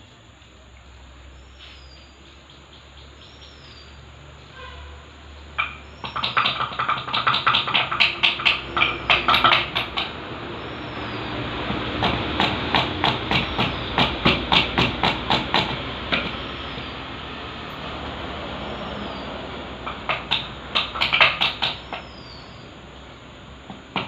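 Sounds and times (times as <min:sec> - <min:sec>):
rapid metallic strikes: 0:11.7 - 0:16.5.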